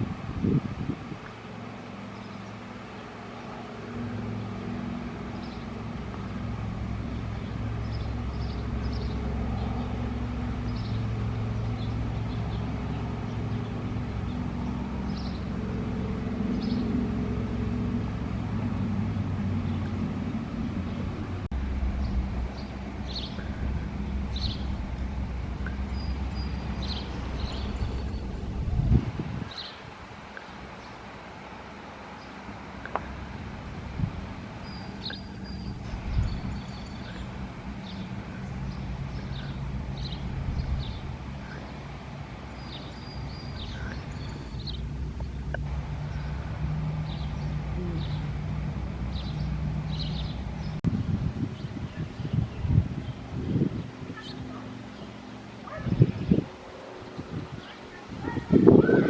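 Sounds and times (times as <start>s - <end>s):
vehicle engine droning: 0.0s - 59.0s
bird chirps: 21.9s - 24.9s, 34.6s - 41.8s, 42.5s - 45.4s.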